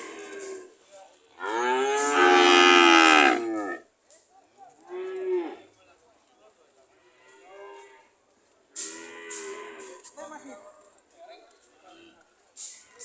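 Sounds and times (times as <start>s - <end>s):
cattle mooing: 1.4s - 3.8s.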